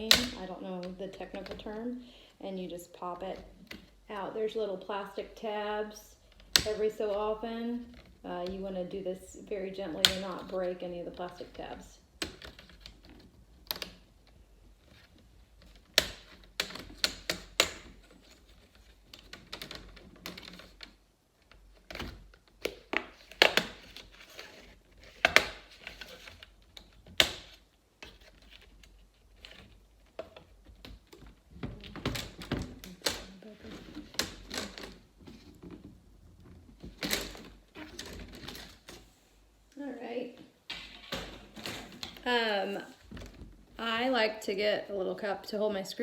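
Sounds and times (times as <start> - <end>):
plastic tabs clicking and snapping: 15.6 - 29.0.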